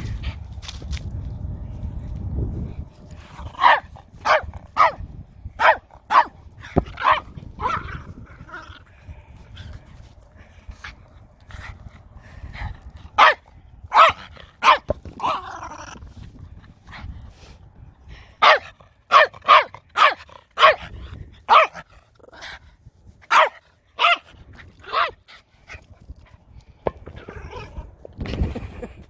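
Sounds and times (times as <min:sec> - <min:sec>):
dog barking: 0:03.6 - 0:05.0, 0:05.6 - 0:06.4, 0:07.0 - 0:08.0, 0:13.2 - 0:15.4, 0:18.4 - 0:20.8, 0:21.5 - 0:21.8, 0:23.3 - 0:24.3, 0:24.9 - 0:25.2.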